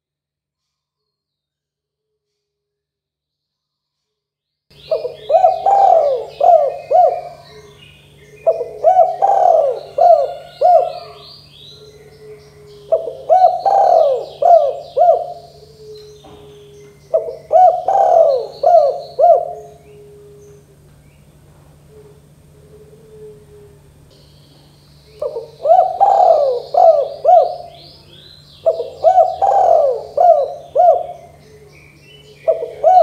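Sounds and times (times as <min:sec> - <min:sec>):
dove cooing: 0:04.8 - 0:20.9, 0:21.7 - 0:24.1, 0:25.2 - 0:33.0.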